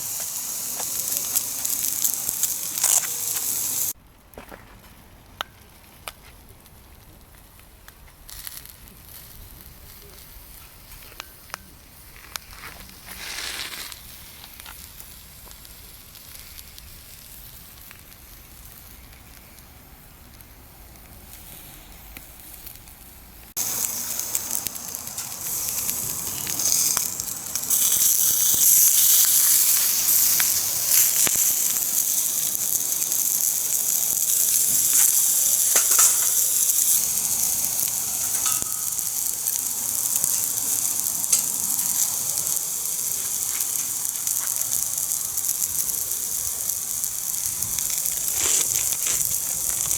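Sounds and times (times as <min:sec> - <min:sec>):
fish sizzling in a pan: 0:00.0 - 0:04.0, 0:20.4 - 0:49.9
low crackle of frying: 0:00.0 - 0:49.9.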